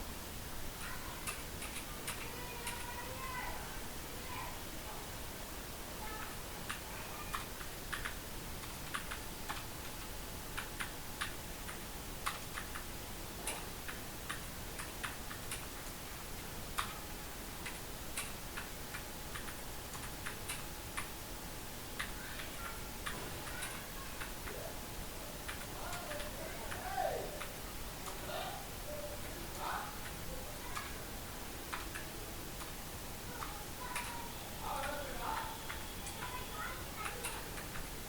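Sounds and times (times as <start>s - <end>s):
steady background hiss: 0.0s - 38.0s
keyboard keys clicking: 6.7s - 15.7s, 17.6s - 21.1s, 25.5s - 26.8s, 31.7s - 32.7s.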